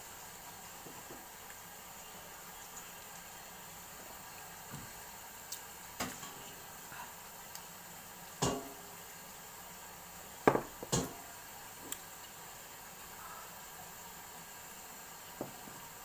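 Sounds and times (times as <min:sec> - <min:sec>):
steady hiss: 0:00.0 - 0:16.0
kitchenware knocking and clinking: 0:10.5 - 0:11.2.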